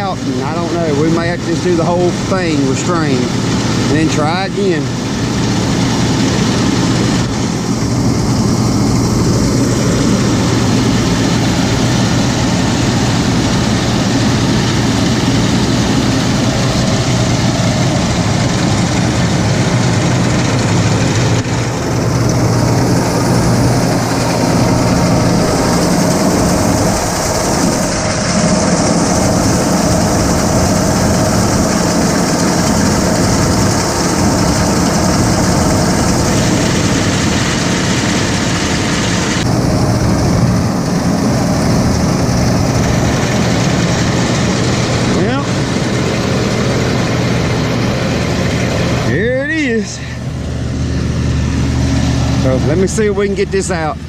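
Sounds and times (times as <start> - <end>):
baler machinery running: 0.0 - 54.0
tractor engine running: 0.0 - 54.0.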